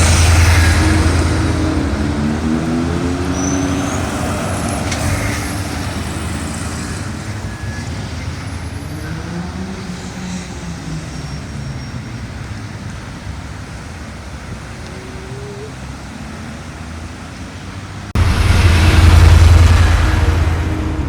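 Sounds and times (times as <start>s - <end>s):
vehicle engine passing: 0.0s - 11.2s, 15.2s - 21.0s
engine note: 0.0s - 12.3s, 18.1s - 21.0s
traffic hum: 0.0s - 21.0s.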